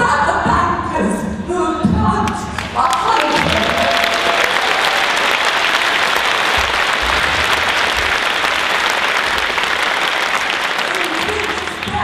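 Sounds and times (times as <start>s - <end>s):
audience applauding: 2.6s - 12.0s.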